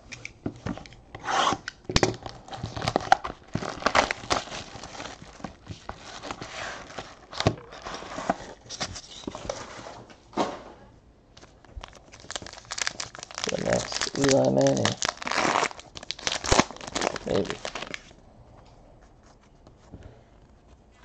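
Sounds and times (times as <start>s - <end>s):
paper and plastic crinkling: 2.1s - 10.0s, 11.4s - 18.2s
packaging tearing: 2.2s - 8.0s, 11.8s - 18.1s.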